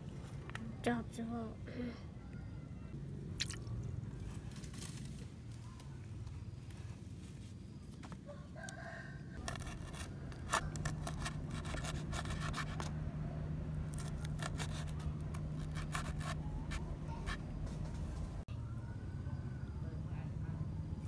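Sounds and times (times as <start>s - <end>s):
low steady hum: 0.0s - 21.0s
rooster crowing: 8.2s - 11.3s
clicks and scrapes of food handling: 9.4s - 13.0s, 13.9s - 17.4s.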